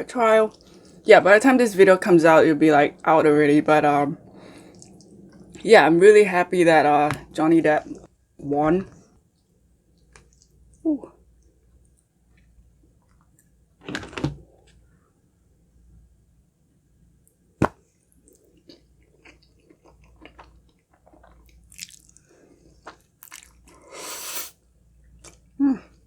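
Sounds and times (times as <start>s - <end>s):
wet chewing and mouth smacking: 4.3s - 5.6s, 18.2s - 23.8s.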